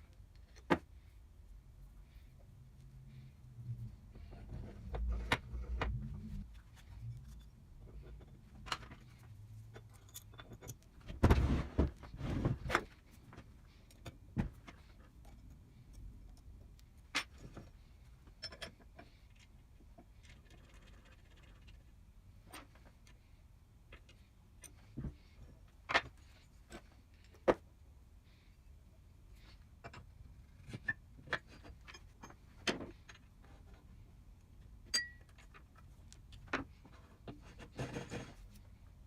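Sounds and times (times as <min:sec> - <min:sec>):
metal tools clinking and knocking: 0:07.0 - 0:11.1, 0:17.1 - 0:19.1, 0:30.8 - 0:33.3.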